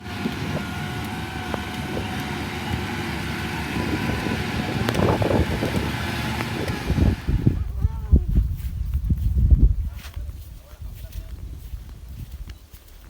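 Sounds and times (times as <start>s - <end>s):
combine harvester engine rumble: 0.0s - 8.7s.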